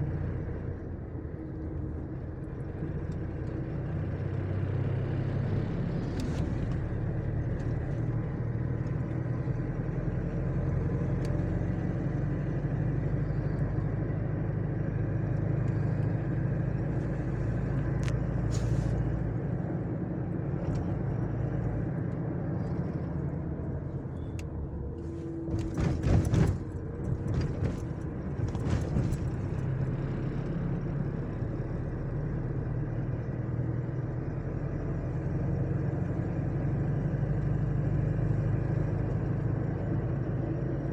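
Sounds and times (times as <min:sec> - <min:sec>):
vehicle engine and road noise: 0:00.0 - 0:40.9
sharp knocks and rattles: 0:25.5 - 0:29.8.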